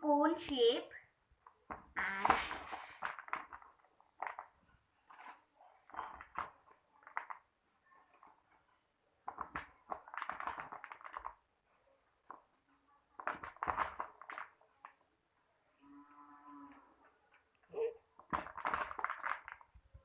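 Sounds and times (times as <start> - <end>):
paper rustling: 2.0 - 7.4
crunching of dry snack pieces: 18.2 - 19.8.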